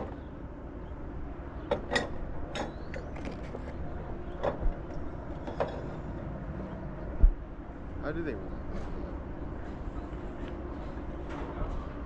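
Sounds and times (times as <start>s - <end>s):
steady low background noise: 0.0s - 12.0s
tools and metal parts clicking: 1.7s - 3.7s.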